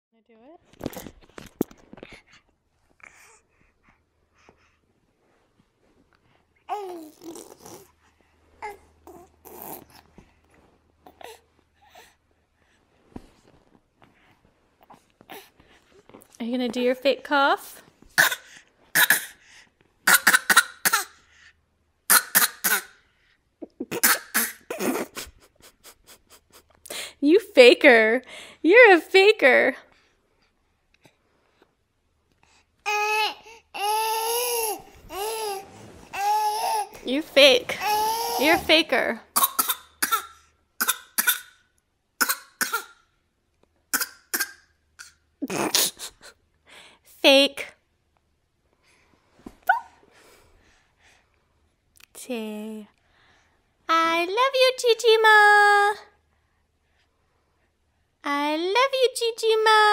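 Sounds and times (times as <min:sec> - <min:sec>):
child fake coughing: 0:18.2 - 0:19.4, 0:20.1 - 0:21.2, 0:22.1 - 0:23.0, 0:23.8 - 0:25.2, 0:39.4 - 0:41.6, 0:42.2 - 0:43.0, 0:43.9 - 0:46.1.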